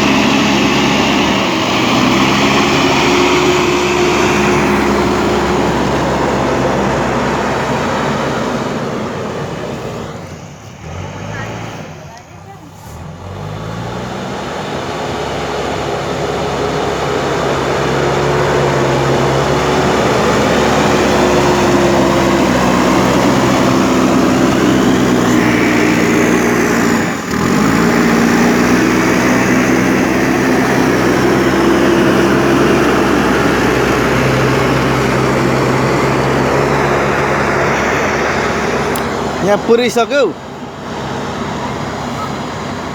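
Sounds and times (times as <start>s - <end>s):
backhoe diesel engine running: 0.0s - 42.9s.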